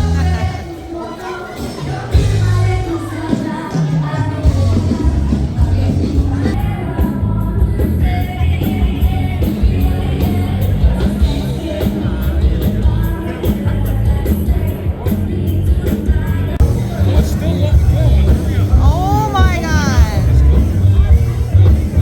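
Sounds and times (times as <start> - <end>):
heavy bass line: 16.6 - 22.0
person singing: 18.7 - 20.6.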